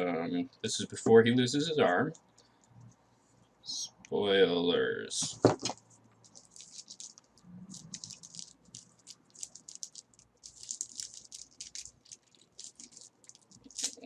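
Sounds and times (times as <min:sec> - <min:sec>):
plastic packaging crinkling: 0:05.6 - 0:14.0.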